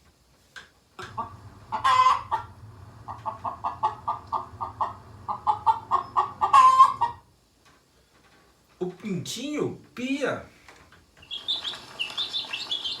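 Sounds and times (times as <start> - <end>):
hen clucking: 1.0 - 7.3, 11.2 - 13.0
hen squawking: 11.2 - 13.0.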